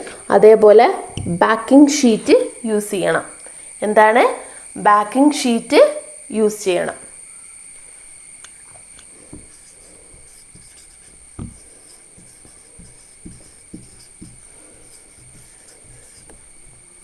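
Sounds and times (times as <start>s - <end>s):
faint room hiss: 0.0s - 17.0s
steady high whine: 0.0s - 17.0s
soft dull knocks: 11.4s - 11.6s, 12.8s - 14.4s.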